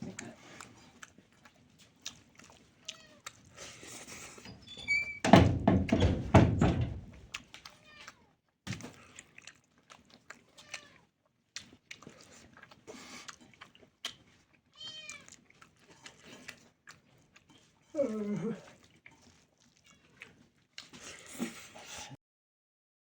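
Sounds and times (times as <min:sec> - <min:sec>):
chewing with wet mouth clicks: 0:00.0 - 0:04.5, 0:07.2 - 0:21.6
short squeaky sounds: 0:04.4 - 0:07.2.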